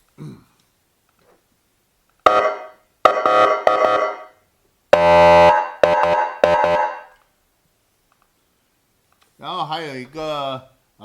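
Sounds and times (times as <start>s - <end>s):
electronic air horn blasts: 2.2s - 7.2s.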